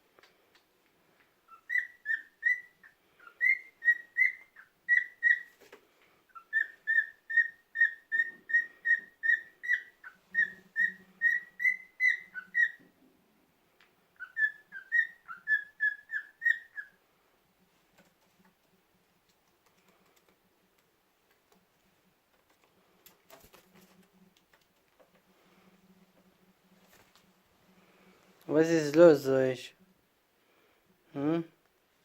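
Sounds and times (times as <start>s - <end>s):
cockatiel whistling: 1.5s - 5.5s, 6.3s - 12.8s, 14.2s - 17.0s.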